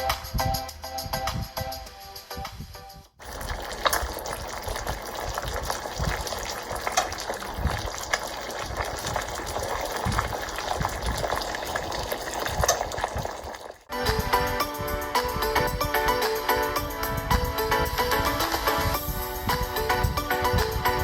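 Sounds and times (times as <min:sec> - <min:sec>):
curry bubbling in a pot: 0:03.2 - 0:13.9.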